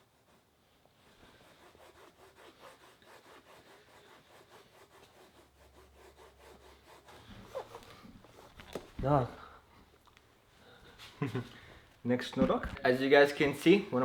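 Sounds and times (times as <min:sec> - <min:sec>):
shoelace rasping against plastic: 0:01.1 - 0:09.5.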